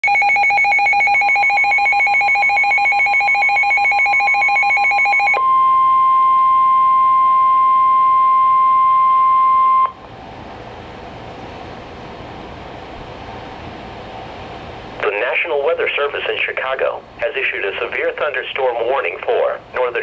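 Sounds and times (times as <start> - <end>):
warbling two-pitch alarm: 0.0 - 10.0.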